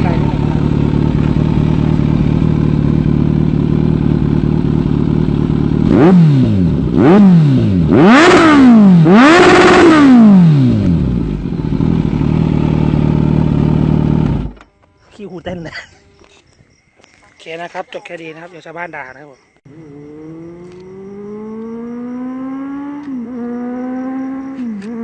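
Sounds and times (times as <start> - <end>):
motorcycle engine idling: 0.0 - 7.1, 10.6 - 16.3
motorcycle engine revving: 0.0 - 14.8, 19.7 - 25.0.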